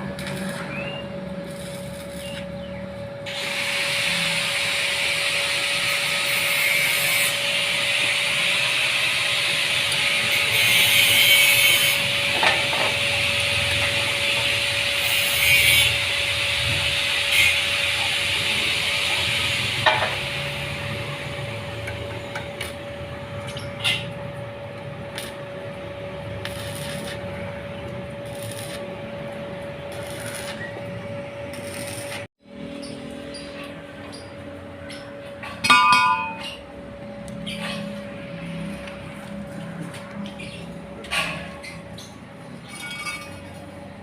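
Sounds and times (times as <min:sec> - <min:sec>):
steady tool whine: 0:00.0 - 0:33.4
sawing hissing noise: 0:03.3 - 0:12.1.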